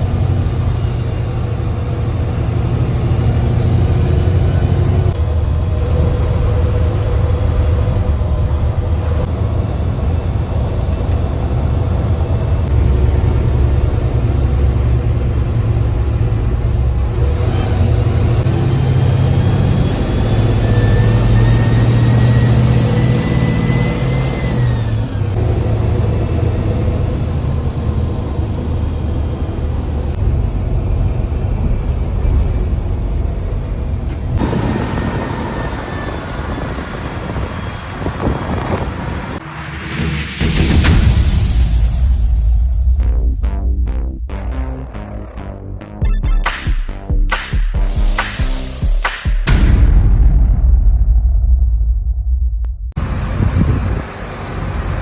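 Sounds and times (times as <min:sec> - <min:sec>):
bus diesel engine rumbling: 0:00.0 - 0:39.6, 0:52.9 - 0:55.0
turbocharger whistle: 0:17.2 - 0:25.4, 0:34.4 - 0:39.4.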